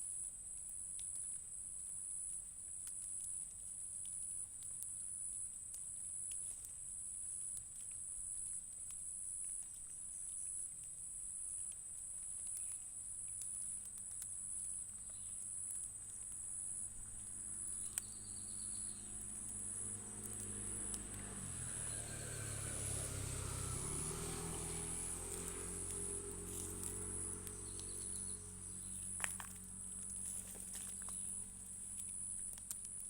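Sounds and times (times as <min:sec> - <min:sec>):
low engine-like rumble: 0:09.5 - 0:33.0
insects buzzing: 0:13.2 - 0:33.0.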